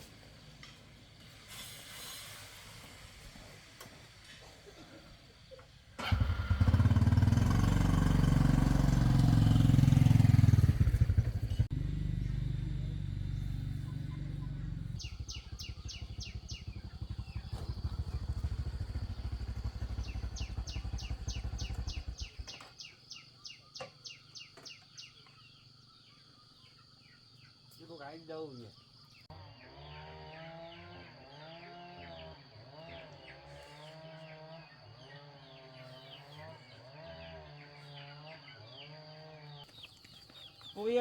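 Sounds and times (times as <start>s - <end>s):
small motorbike engine running: 6.0s - 24.2s, 29.4s - 41.0s
bird chirping: 10.2s - 29.3s, 39.6s - 41.0s.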